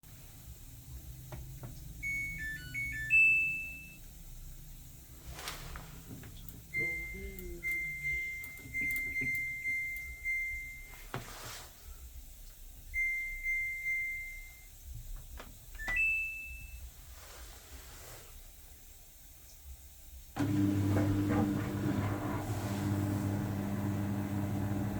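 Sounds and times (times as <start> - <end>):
washing machine beeping: 1.9 - 4.1, 6.6 - 11.1, 12.9 - 14.8, 15.7 - 16.9, 20.4 - 24.9.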